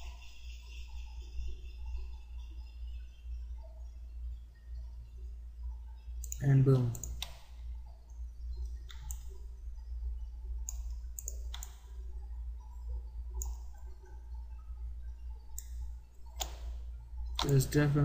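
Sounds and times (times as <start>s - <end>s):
low electrical hum: 0.0s - 18.0s
computer mouse clicking: 6.2s - 7.5s, 8.6s - 9.4s, 10.6s - 12.0s, 13.3s - 14.2s, 15.5s - 17.8s.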